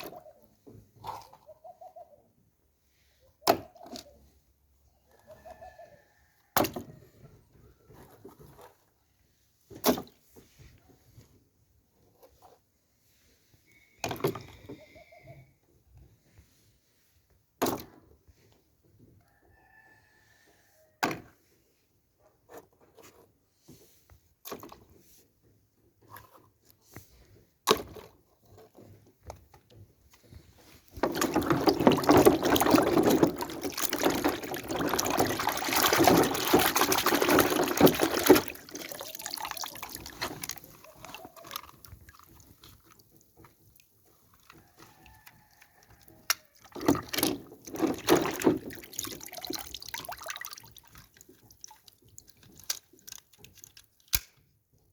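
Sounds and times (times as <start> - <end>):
liquid pouring and splashing: 30.6 - 54.1.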